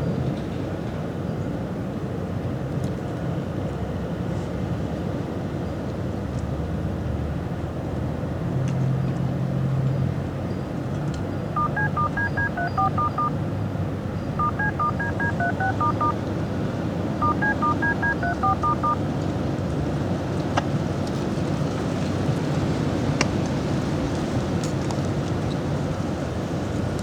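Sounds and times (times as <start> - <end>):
outdoor background noise: 5.7 - 27.0
touch tones: 11.6 - 13.4, 14.4 - 16.2, 17.2 - 19.0.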